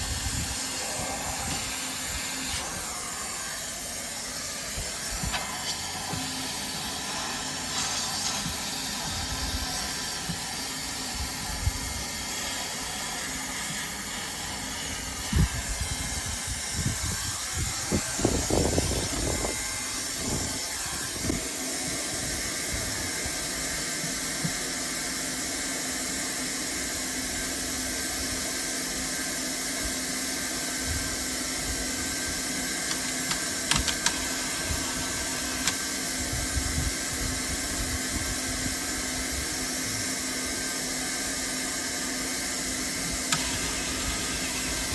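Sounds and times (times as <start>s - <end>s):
hot-air welder hissing: 0.0s - 44.9s.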